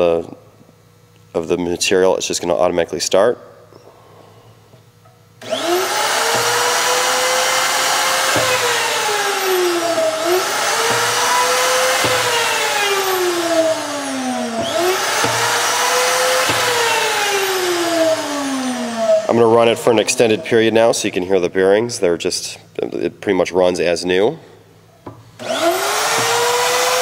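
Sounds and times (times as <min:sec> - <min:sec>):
key machine motor whining: 0:05.4 - 0:19.3.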